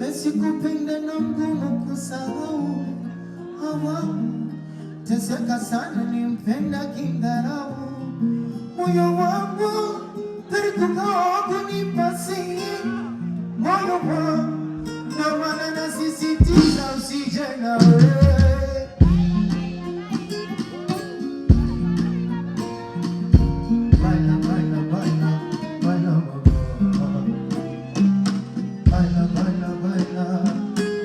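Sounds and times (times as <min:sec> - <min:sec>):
guitar: 0:00.0 - 0:31.0
person singing: 0:00.0 - 0:31.0
heavy low bass: 0:19.0 - 0:19.7, 0:26.5 - 0:27.3, 0:28.9 - 0:29.8.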